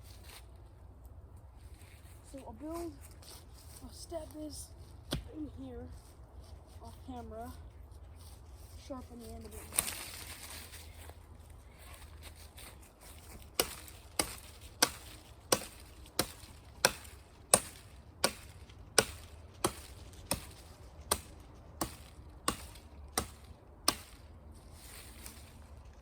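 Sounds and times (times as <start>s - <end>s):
axe chopping wood: 13.5s - 24.3s.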